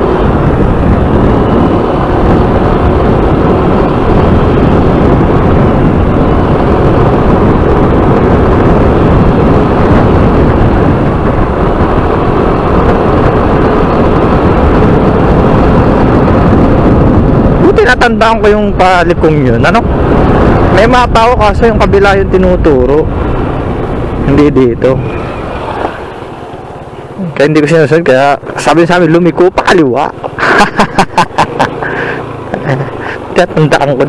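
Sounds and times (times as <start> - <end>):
wind rushing: 0.0 - 34.0
scooter engine: 30.2 - 33.4.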